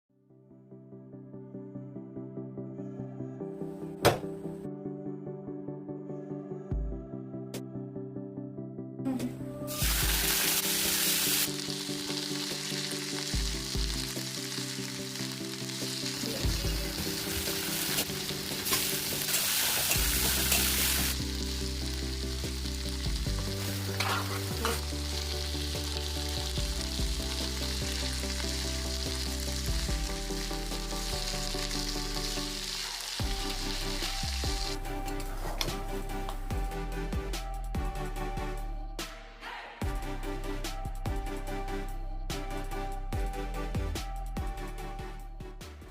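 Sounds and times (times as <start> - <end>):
background music: 0.3 - 45.9
food sizzling in hot oil: 9.7 - 34.8
food being stirred in pan: 16.9 - 21.2, 23.3 - 24.9.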